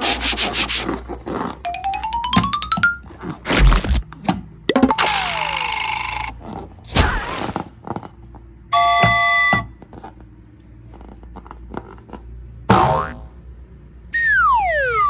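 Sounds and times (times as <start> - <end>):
falling whistle-like tone: 14.2 - 15.0.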